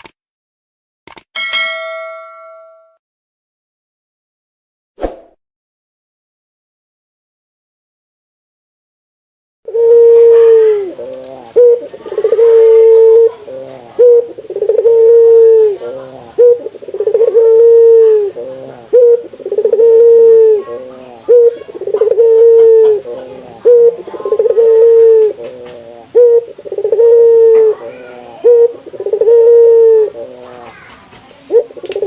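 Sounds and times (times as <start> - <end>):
dove cooing: 9.7 - 32.0.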